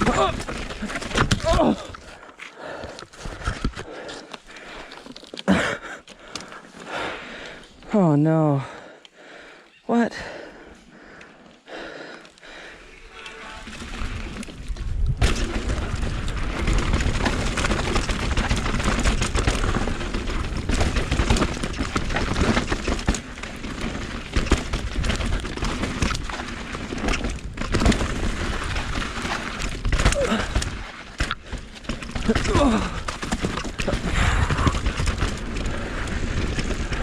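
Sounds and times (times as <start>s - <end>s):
bike clattering over bumps: 0.0s - 7.6s, 13.6s - 37.0s
wind rumbling on microphone: 13.6s - 23.1s.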